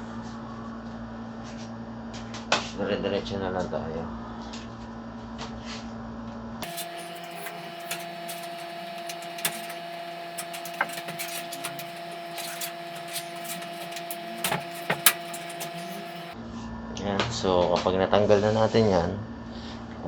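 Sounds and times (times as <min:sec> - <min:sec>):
computer case parts clicking: 0:06.6 - 0:16.4
steady electrical hum: 0:06.6 - 0:16.4.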